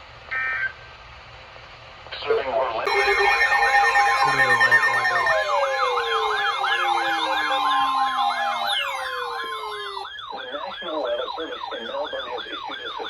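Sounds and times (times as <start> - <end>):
electronic sirens wailing: 2.9 - 13.0
two-tone alarm tone: 2.9 - 13.0.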